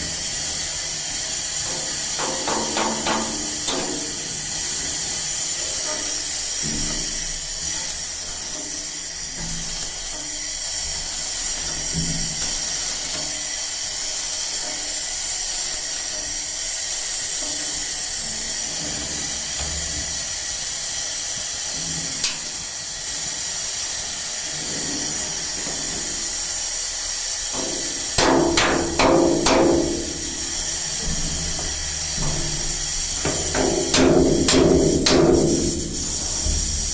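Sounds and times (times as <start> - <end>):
welding arc hissing and crackling: 0.0 - 36.9
hammer blows on metal: 27.6 - 31.4, 33.2 - 36.8.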